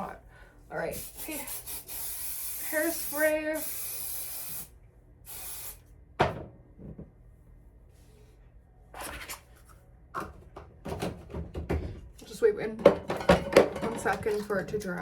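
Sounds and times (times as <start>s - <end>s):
hairspray hissing: 1.0s - 4.7s, 5.3s - 5.8s.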